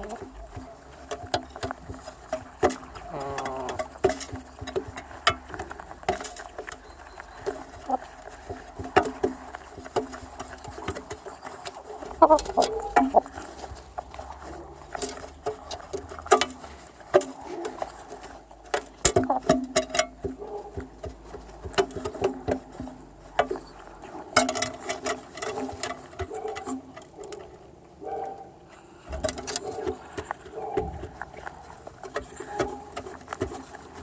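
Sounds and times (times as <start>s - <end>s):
chickens pecking at feed: 0.0s - 34.0s.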